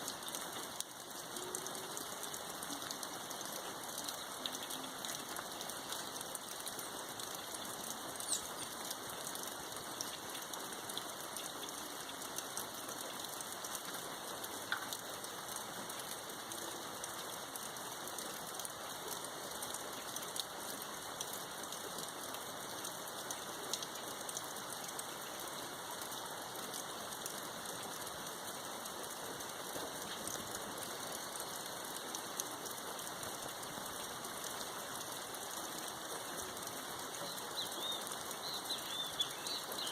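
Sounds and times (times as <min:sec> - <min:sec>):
raindrop ticks: 0:00.0 - 0:22.2, 0:22.8 - 0:39.9
steady rain hiss: 0:00.0 - 0:39.9.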